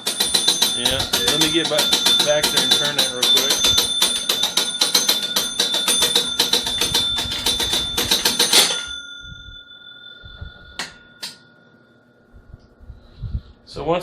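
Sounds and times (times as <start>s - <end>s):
pinball machine bell ringing: 0.0s - 12.2s.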